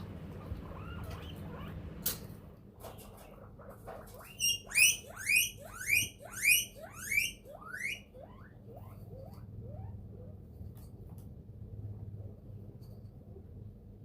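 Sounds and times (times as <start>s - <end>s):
guinea pig chirping: 0.3s - 2.0s, 3.4s - 10.5s.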